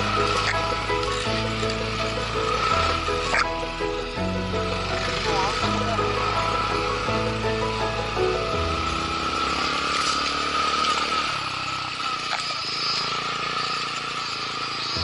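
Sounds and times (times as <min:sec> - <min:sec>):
steady high tone: 0:00.0 - 0:10.1
motorcycle engine running: 0:00.0 - 0:15.0
road and wind noise: 0:00.0 - 0:15.0.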